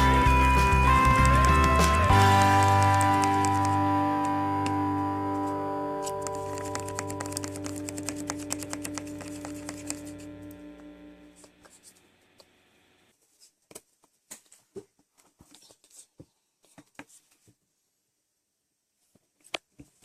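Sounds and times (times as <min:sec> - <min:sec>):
background music: 0:00.0 - 0:11.4.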